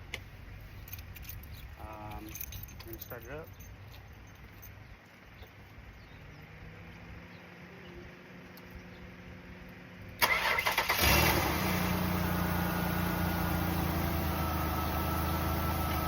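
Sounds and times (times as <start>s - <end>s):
car engine idling: 10.1s - 16.0s
starter motor cranking: 10.2s - 12.0s.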